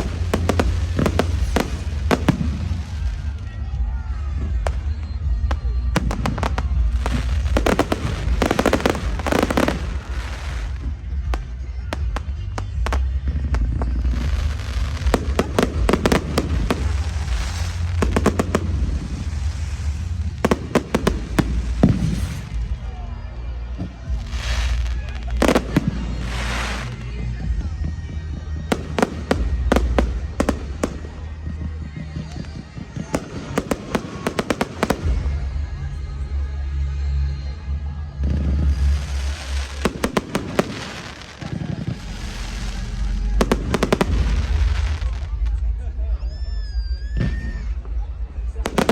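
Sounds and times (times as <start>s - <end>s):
low rumble: 0.0s - 33.9s, 34.8s - 48.9s
fireworks banging and crackling: 0.0s - 36.6s, 38.1s - 48.9s.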